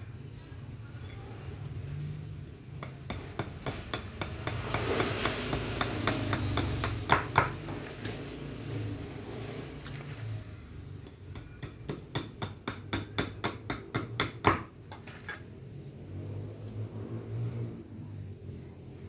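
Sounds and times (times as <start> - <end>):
hammer tapping with metallic clink: 2.8 - 7.6, 11.0 - 15.4.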